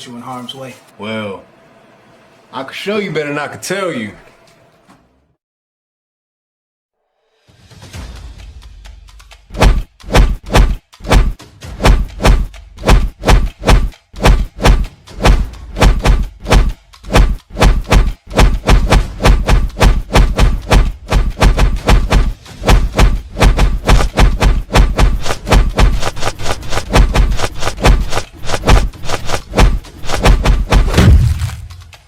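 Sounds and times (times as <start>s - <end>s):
heavy thuds: 13.3s - 31.8s.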